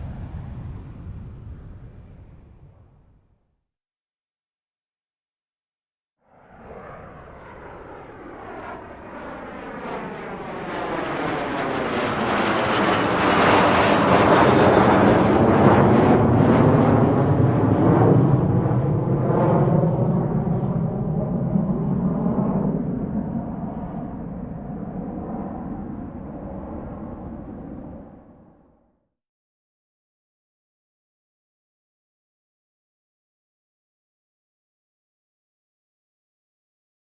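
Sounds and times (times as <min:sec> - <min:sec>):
jet aircraft flying past: 0:00.0 - 0:03.1, 0:06.3 - 0:28.7.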